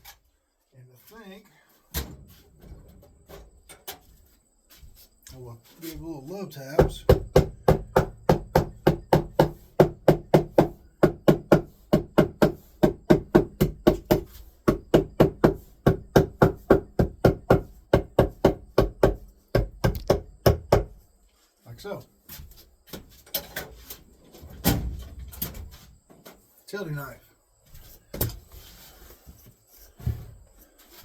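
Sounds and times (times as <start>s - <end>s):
hammer tapping on carpeted wood: 6.8s - 20.9s.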